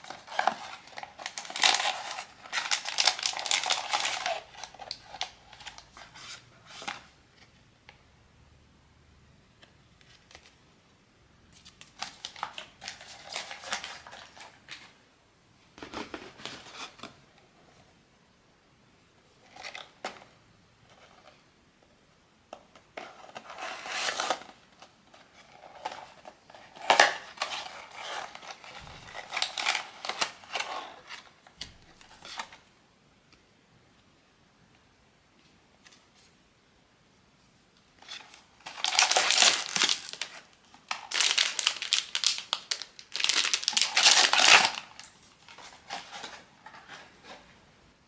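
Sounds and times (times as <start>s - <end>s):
packaging rustling and tearing: 0.0s - 7.1s, 11.6s - 14.9s, 25.3s - 32.6s, 38.0s - 47.4s.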